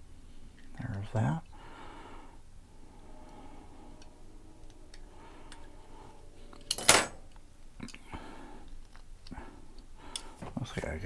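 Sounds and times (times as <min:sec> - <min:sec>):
faint clicks of metal parts: 0:00.5 - 0:01.2, 0:06.5 - 0:10.8.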